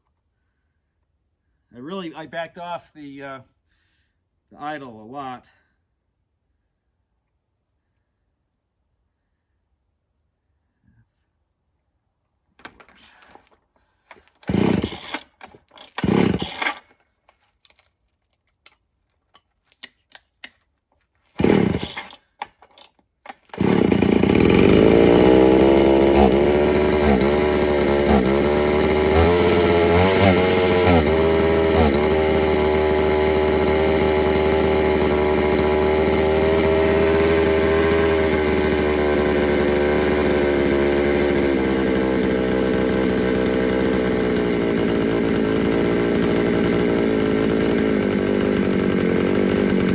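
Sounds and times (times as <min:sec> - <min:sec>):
recoil starter pulls: 0:12.6 - 0:20.6, 0:21.3 - 0:49.9
chainsaw engine running: 0:14.1 - 0:16.9, 0:21.4 - 0:49.9.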